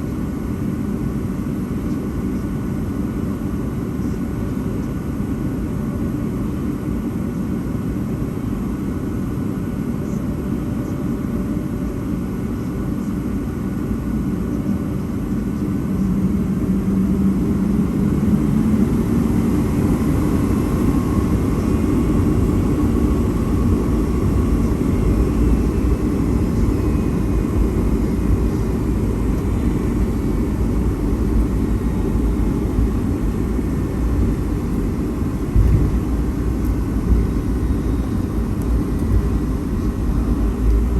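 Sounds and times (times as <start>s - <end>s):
jet engine cabin rumble: 0.0s - 40.9s
faint whine: 12.5s - 40.9s.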